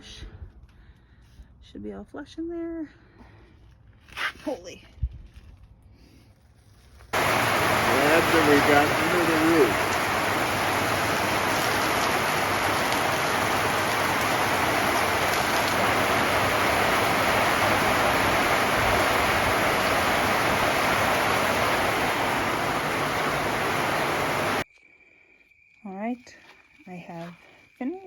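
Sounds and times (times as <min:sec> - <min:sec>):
heavy rain on a roof: 0:07.1 - 0:24.6.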